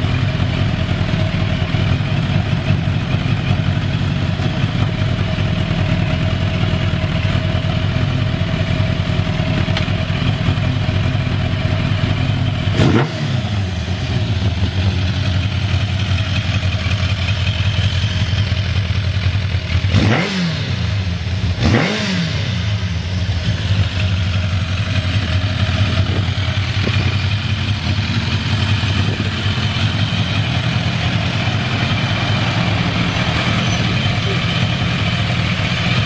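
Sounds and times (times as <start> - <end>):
motorcycle engine idling and revving: 0.0 - 36.0.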